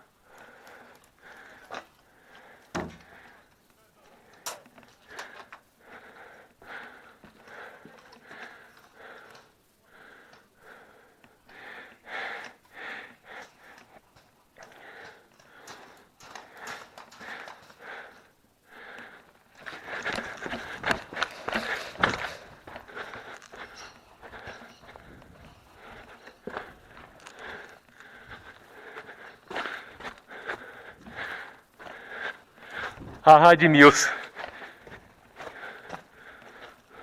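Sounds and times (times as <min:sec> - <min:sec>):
person breathing heavily: 0:00.0 - 0:14.0, 0:14.6 - 0:37.0
rustling and shuffling: 0:19.2 - 0:33.3.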